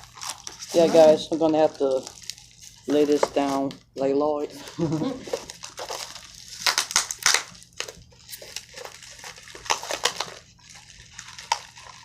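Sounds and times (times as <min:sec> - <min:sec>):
packaging crinkling: 0:00.0 - 0:03.8, 0:04.6 - 0:12.0.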